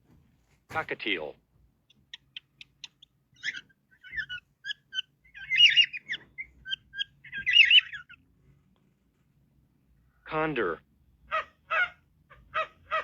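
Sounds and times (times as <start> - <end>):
cockatiel chirping and chattering: 1.9 - 8.2.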